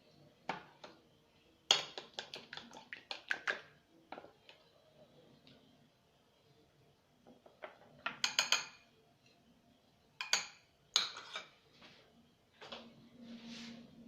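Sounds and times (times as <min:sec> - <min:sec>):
spoon clinking against a dish: 0:08.2 - 0:08.8, 0:10.2 - 0:11.5.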